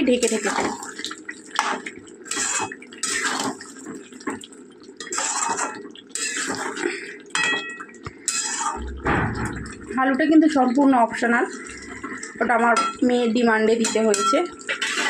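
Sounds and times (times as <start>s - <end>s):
metal spatula scraping a pot: 2.3s - 3.6s, 5.0s - 6.8s, 8.3s - 9.0s, 13.8s - 15.0s
metal clink on pot: 7.4s - 8.6s.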